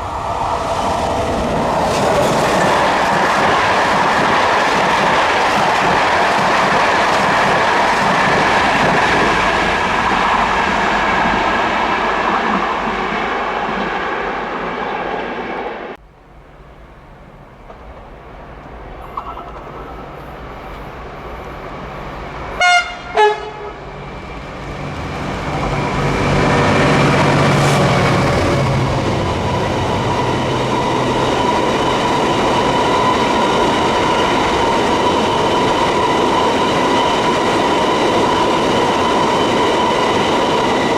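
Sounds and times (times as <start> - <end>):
train passing loudly: 0.0 - 40.9
train wheels clattering over rails: 1.4 - 10.9, 23.9 - 40.9
train horn blasts: 22.5 - 24.1.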